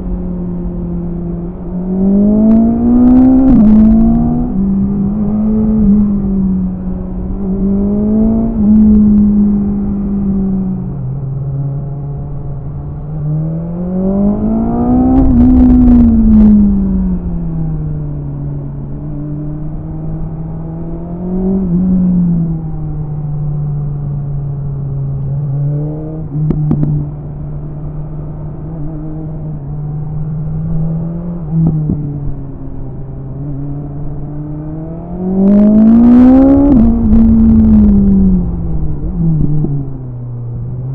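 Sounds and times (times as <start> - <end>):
motorcycle engine revving: 34.4 - 40.0.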